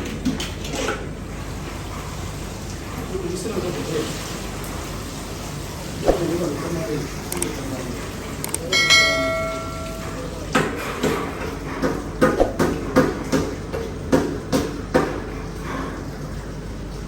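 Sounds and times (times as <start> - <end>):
metal tools banging: 8.7 - 11.2
metal clang: 8.8 - 10.7.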